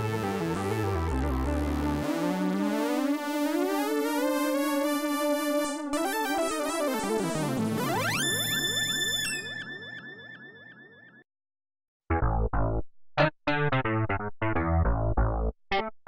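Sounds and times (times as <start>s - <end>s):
synthesizer playing: 0.8s - 10.0s
synth bass part: 12.1s - 15.6s.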